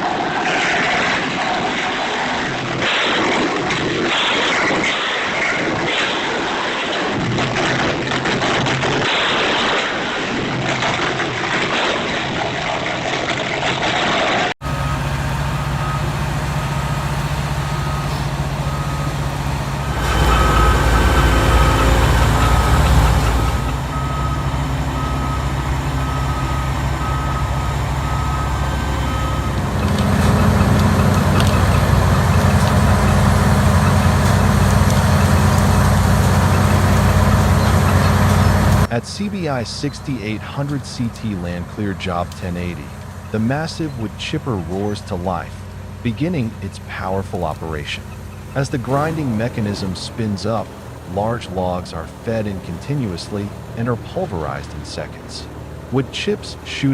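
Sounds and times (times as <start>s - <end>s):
heavy diesel machinery running: 10.8s - 56.9s
backup alarm beeping: 14.6s - 35.5s.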